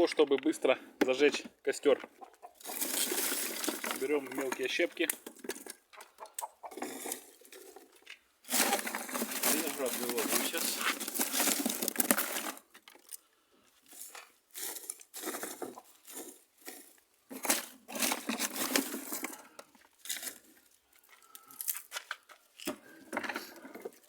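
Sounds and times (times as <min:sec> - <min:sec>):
dry twigs snapping and crackling: 0:08.5 - 0:13.2, 0:13.9 - 0:22.8.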